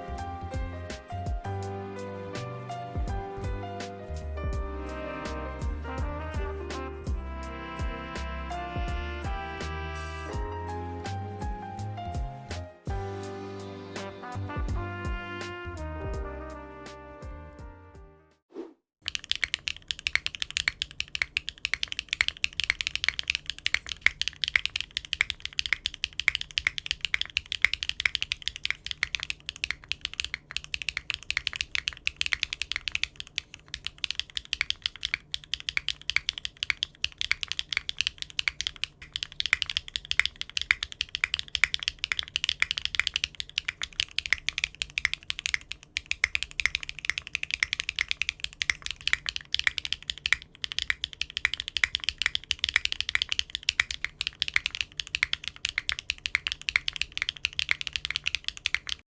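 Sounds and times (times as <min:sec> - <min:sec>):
mechanical keyboard typing: 0:19.0 - 0:59.0.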